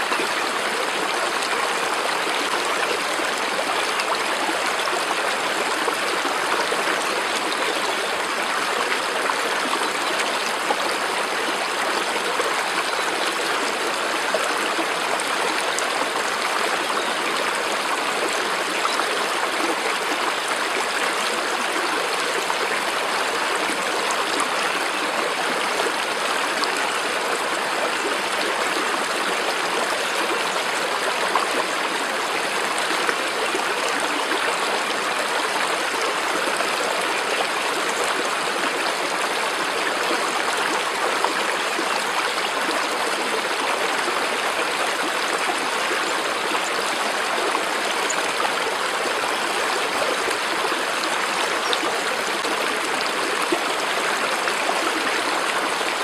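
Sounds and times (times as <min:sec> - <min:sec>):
stream water flowing: 0:00.0 - 0:56.0.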